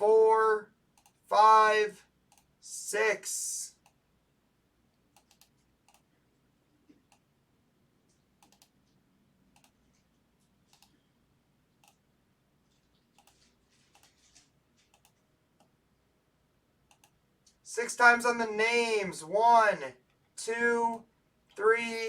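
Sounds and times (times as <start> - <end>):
computer mouse clicking: 1.0 - 1.2, 2.3 - 2.5, 3.8 - 4.0, 5.1 - 6.1, 6.9 - 7.3, 8.1 - 10.1, 10.7 - 11.0, 11.7 - 12.0, 12.7 - 15.7, 16.9 - 17.6.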